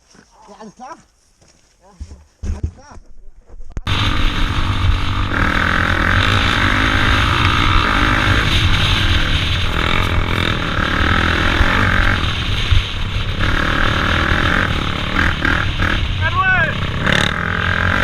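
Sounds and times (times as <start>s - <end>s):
atv engine revving: 3.9s - 18.0s.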